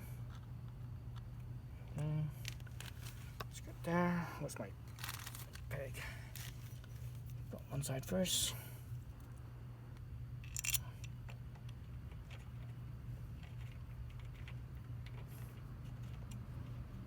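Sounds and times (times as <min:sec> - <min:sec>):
steady low hum: 0:00.0 - 0:17.0
metal bolt and tool clinking: 0:10.4 - 0:10.8.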